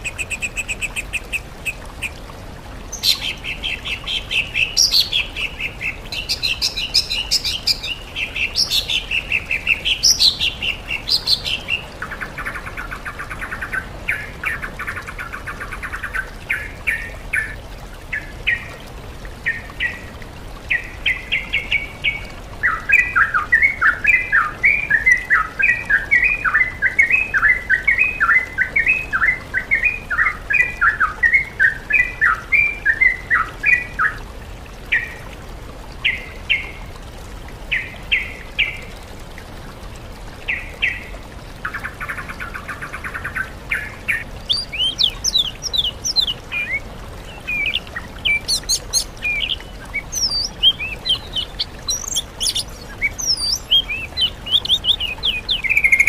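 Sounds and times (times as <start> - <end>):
songbirds singing: 0.0 - 2.2, 2.8 - 34.2, 40.5 - 56.0.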